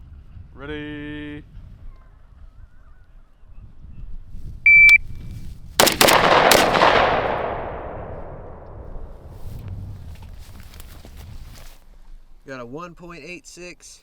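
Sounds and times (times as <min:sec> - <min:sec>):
shot timer beep: 0:04.7 - 0:05.0
gunshots echoing: 0:05.8 - 0:09.3.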